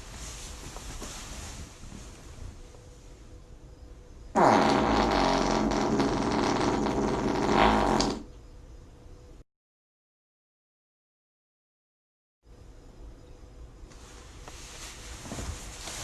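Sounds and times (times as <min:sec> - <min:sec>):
long loud fart: 0:04.4 - 0:08.3.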